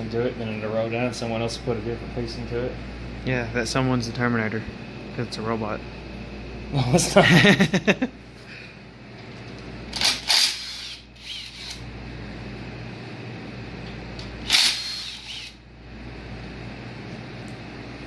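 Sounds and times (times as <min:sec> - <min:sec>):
low shop hum: 0:00.0 - 0:18.0
sharp metallic tool noises: 0:14.5 - 0:15.6.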